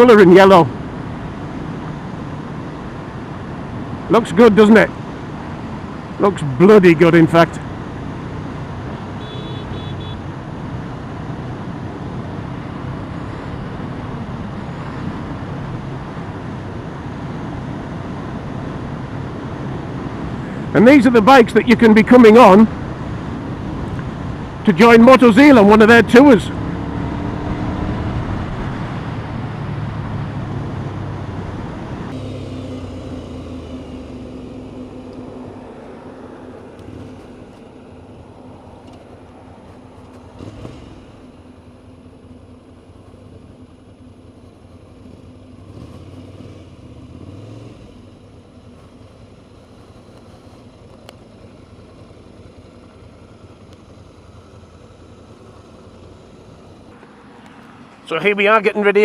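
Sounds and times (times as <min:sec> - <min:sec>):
distant traffic: 0:00.0 - 0:59.0
low engine hum: 0:00.0 - 0:59.0
vehicle engine passing: 0:11.2 - 0:42.2, 0:45.1 - 0:59.0.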